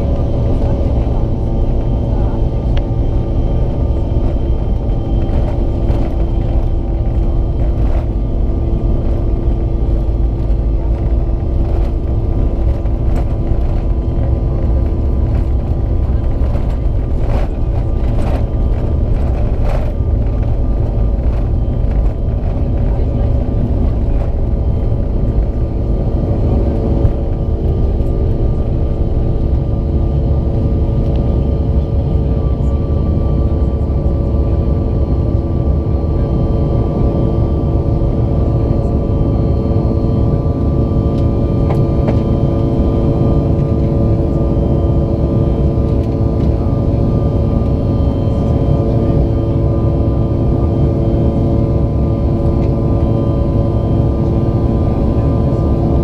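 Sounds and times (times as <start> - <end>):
rushing cabin air: 0.0 - 29.4
jet engine hum: 0.0 - 56.0.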